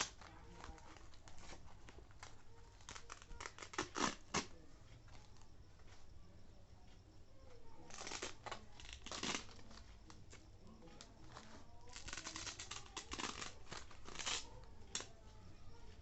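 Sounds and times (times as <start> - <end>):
packaging crinkling and rustling: 0.0 - 4.5, 11.3 - 15.1
packaging ripping: 11.9 - 15.1.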